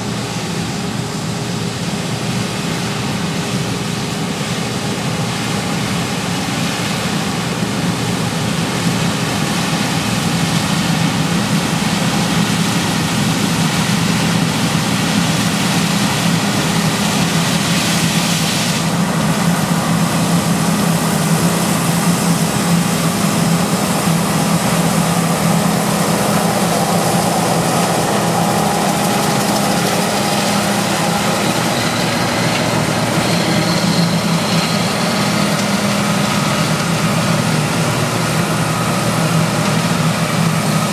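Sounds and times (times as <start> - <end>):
combine harvester engine droning: 0.0 - 40.9
high rushing hiss: 15.8 - 36.5.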